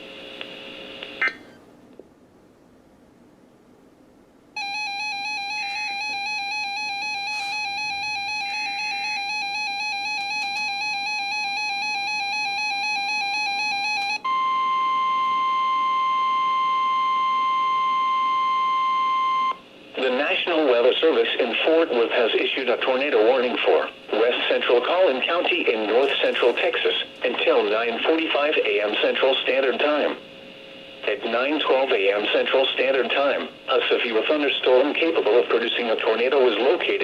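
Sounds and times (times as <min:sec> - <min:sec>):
steady single-pitch tone: 0:04.6 - 0:19.6
wavering electronic alarm tone: 0:04.6 - 0:19.6.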